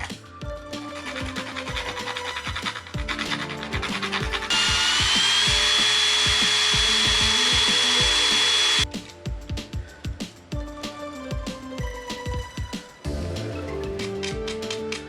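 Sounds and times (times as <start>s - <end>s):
rubbing and scratching: 0.0s - 8.8s
background music with beat: 0.0s - 15.0s
power tool whining: 4.4s - 8.8s.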